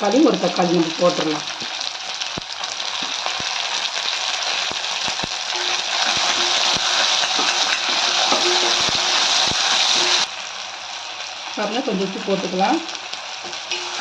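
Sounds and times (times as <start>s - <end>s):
food sizzling in oil: 0.0s - 14.0s
spoon scraping against pan: 5.5s - 10.3s, 13.4s - 14.0s.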